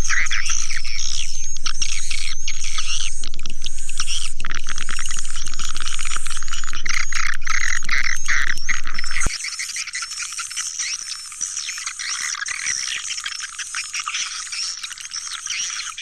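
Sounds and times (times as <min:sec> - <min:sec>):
low hum: 0:00.0 - 0:09.3
swiftlets chirping and twittering: 0:00.0 - 0:16.0.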